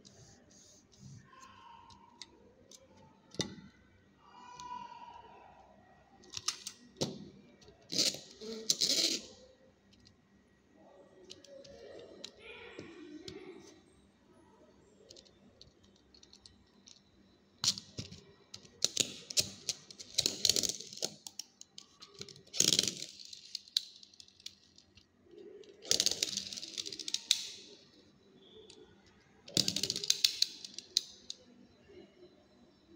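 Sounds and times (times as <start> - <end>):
plastic toy drone clicking and rattling: 6.2 - 6.8, 17.6 - 27.7, 29.5 - 31.4.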